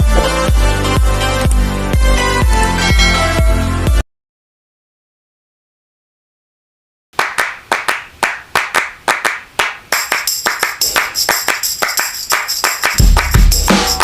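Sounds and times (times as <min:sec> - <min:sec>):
rhythmic handclaps: 0:07.2 - 0:14.0.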